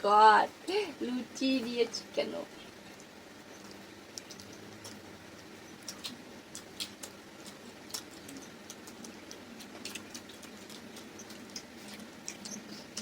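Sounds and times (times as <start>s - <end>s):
mouths chewing: 2.6s - 13.0s.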